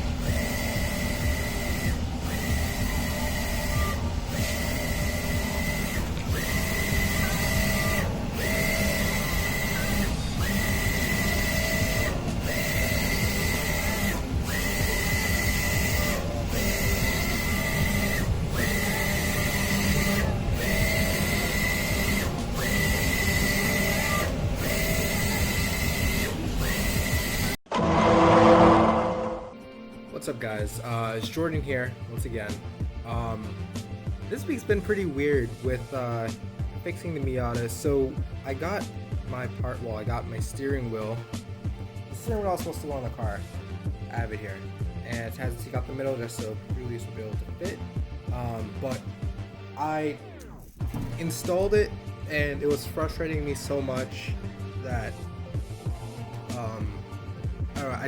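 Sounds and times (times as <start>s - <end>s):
printer carriage whine: 0.0s - 29.5s.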